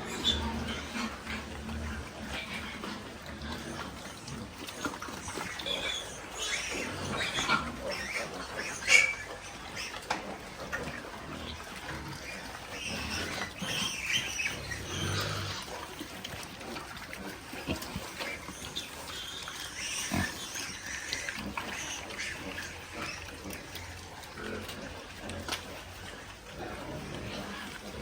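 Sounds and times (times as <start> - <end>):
pigs grunting: 0.0 - 28.0
pigs squealing: 0.0 - 28.0.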